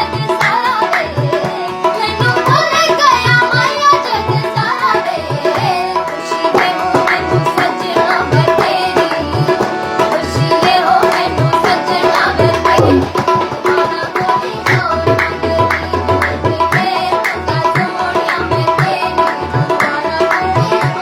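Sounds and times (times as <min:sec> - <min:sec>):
tabla playing: 0:00.0 - 0:21.0
held accompanying notes: 0:06.0 - 0:20.1
person singing: 0:10.2 - 0:21.0.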